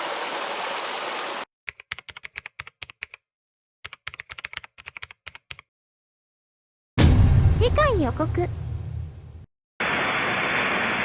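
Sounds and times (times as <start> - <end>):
stream water rushing: 0.0 - 1.4
keyboard typing clicks: 3.8 - 5.7.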